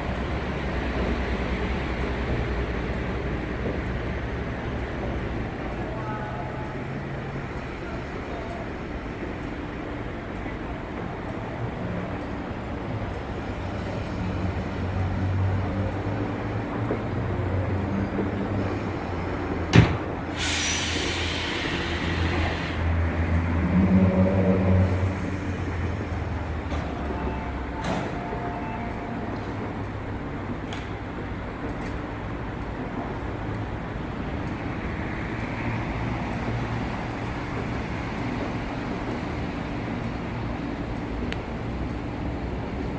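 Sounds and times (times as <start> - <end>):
electric train humming and rumbling: 0.0 - 42.9
compressed air hiss: 20.3 - 22.9.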